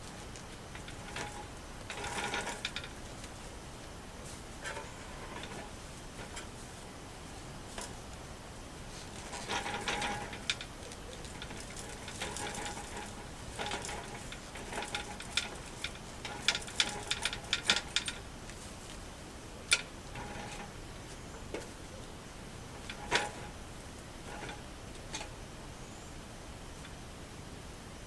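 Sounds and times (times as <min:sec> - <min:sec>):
metal parts clicking and clanking: 0:00.7 - 0:03.0, 0:09.1 - 0:18.2, 0:19.7 - 0:20.7, 0:22.8 - 0:23.6, 0:24.2 - 0:25.3.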